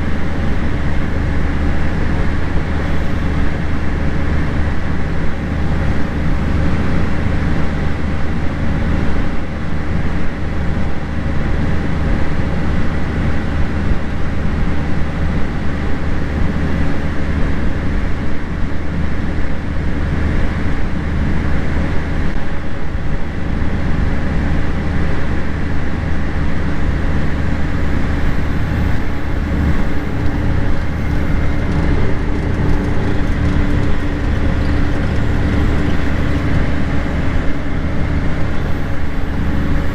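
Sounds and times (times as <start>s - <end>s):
machinery engine drone: 0.0s - 18.1s, 24.6s - 39.9s
steady hum: 27.4s - 39.9s.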